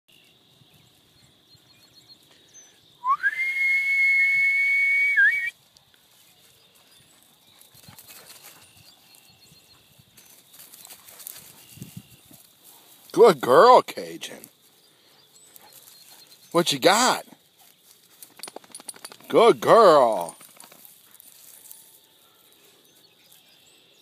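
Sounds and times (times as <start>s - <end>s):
long sliding whistle: 3.0s - 5.5s.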